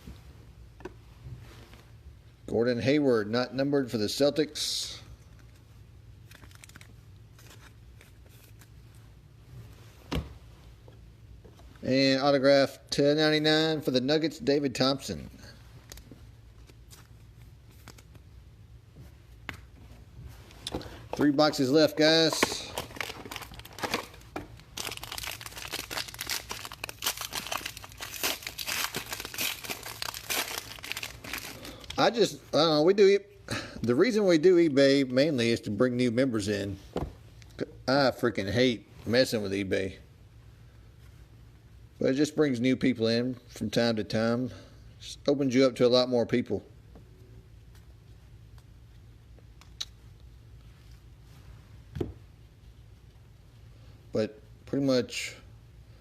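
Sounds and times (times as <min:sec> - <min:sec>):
low steady hum: 0:00.0 - 0:56.0
trading cards being handled: 0:05.3 - 0:09.0, 0:15.8 - 0:18.3, 0:20.5 - 0:32.0
plastic packaging crinkling and tearing: 0:06.2 - 0:08.7, 0:22.3 - 0:32.0.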